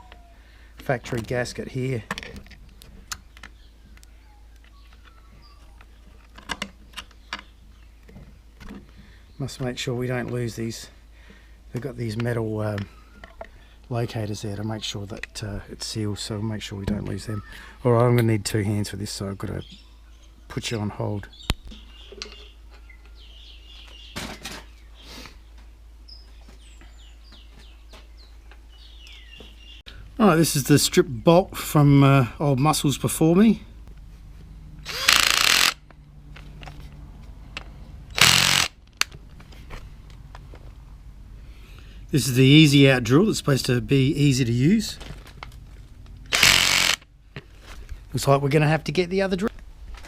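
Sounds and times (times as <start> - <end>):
small birds chirping: 0.0 - 34.1.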